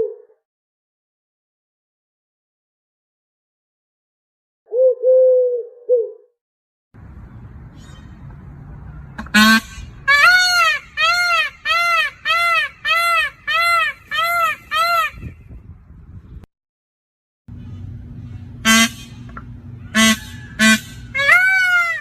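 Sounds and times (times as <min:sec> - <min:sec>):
goose honking: 0:09.2 - 0:15.2, 0:17.6 - 0:22.0.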